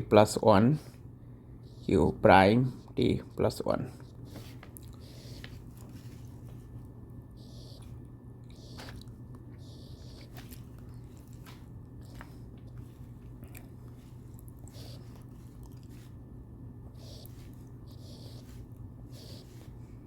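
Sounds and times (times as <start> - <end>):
low electrical hum: 0.0 - 20.0
pen scratching on paper: 1.6 - 6.5, 7.4 - 10.7, 14.0 - 16.1, 16.9 - 19.8.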